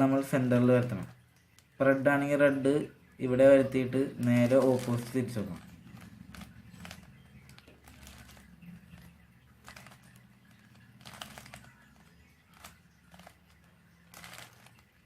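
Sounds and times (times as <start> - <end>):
puzzle cube plastic clicks: 4.2 - 15.0.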